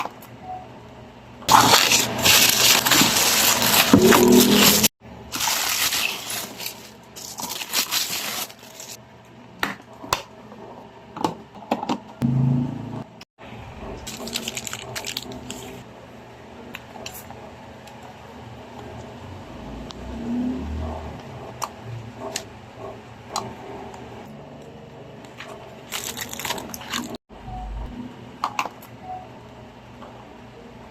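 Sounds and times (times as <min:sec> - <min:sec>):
crinkling and rustling: 0:01.5 - 0:09.0, 0:14.0 - 0:15.8, 0:25.4 - 0:27.2.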